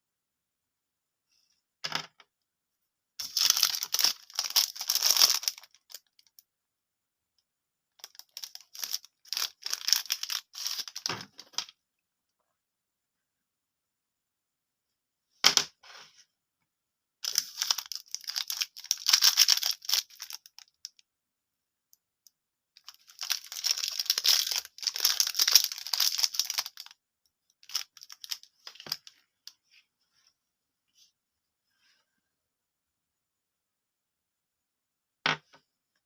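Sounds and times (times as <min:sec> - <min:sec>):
plastic wrappers tearing and crinkling: 0:03.2 - 0:06.2, 0:08.0 - 0:11.1, 0:17.2 - 0:20.7, 0:22.8 - 0:26.9, 0:27.6 - 0:29.0.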